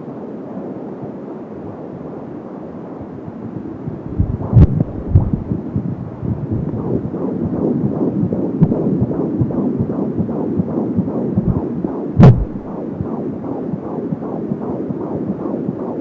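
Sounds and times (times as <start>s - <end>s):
fetal heartbeat through doppler: 4.0s - 16.0s
loud thump: 12.2s - 12.7s.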